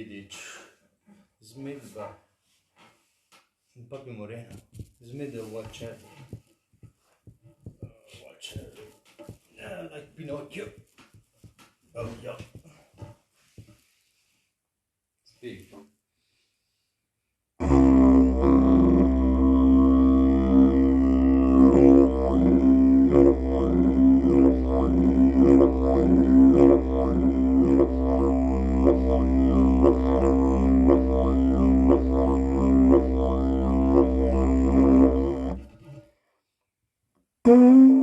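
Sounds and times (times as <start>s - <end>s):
didgeridoo drone: 17.6s - 35.7s.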